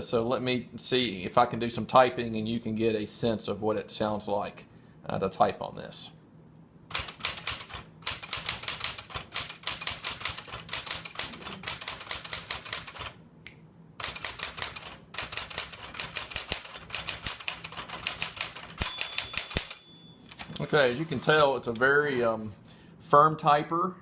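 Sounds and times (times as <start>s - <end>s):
manual typewriter keystrokes: 6.9s - 13.2s, 14.0s - 20.6s.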